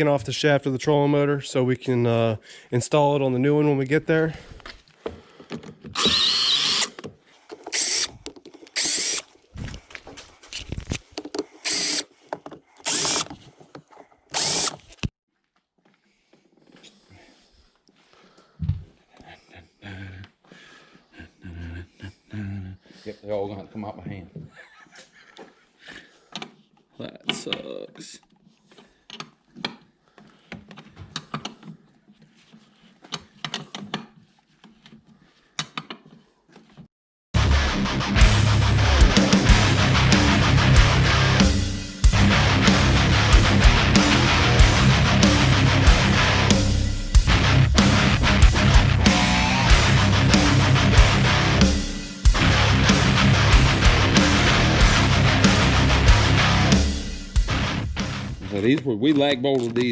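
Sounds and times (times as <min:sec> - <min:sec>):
power drill running in bursts: 0:06.0 - 0:06.9, 0:07.7 - 0:08.1, 0:08.8 - 0:09.2, 0:11.6 - 0:12.1, 0:12.8 - 0:13.3, 0:14.3 - 0:14.8
socket ratchet clicking: 0:11.2 - 0:12.1.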